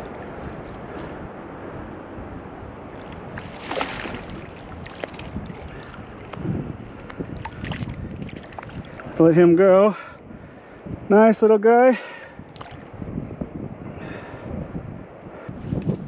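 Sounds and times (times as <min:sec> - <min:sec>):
river water rushing: 0:02.9 - 0:09.2
water splash: 0:03.0 - 0:06.4, 0:07.4 - 0:09.0, 0:12.5 - 0:12.9.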